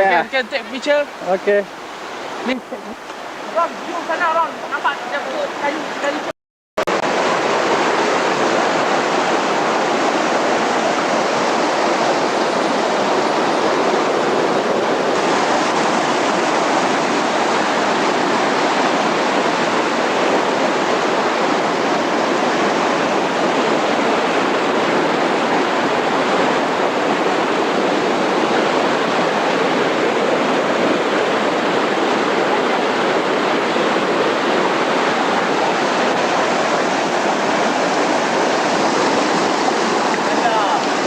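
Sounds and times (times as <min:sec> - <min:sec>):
waterfall rushing: 0:00.0 - 0:41.0.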